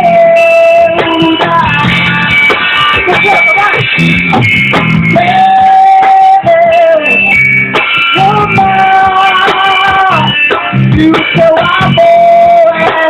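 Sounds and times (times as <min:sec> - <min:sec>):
gospel backing track: 0:00.0 - 0:13.0.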